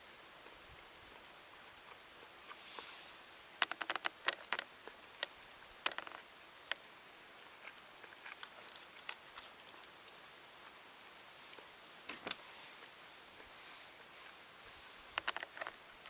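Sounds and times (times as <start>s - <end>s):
sharp irregular clicks: 3.6s - 6.8s, 15.1s - 15.8s.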